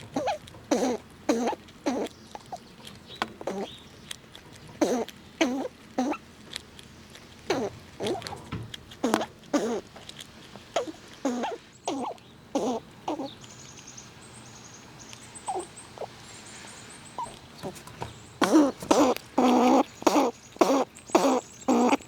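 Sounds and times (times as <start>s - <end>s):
squirrels eating nuts: 0.0s - 22.0s.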